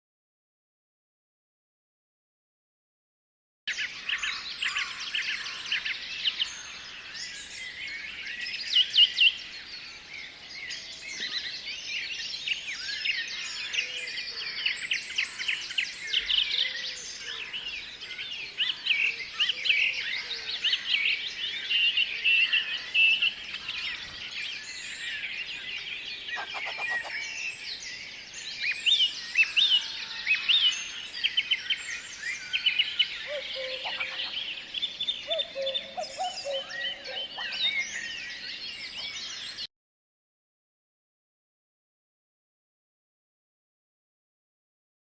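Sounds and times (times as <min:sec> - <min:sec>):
birds chirping and singing: 0:03.7 - 0:39.7.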